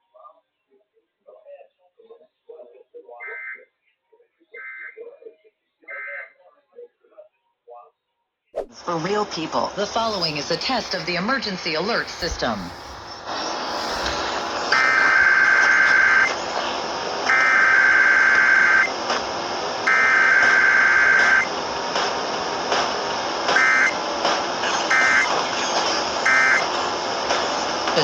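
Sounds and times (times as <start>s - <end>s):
steady broadcast hiss: 9.3s - 16.4s.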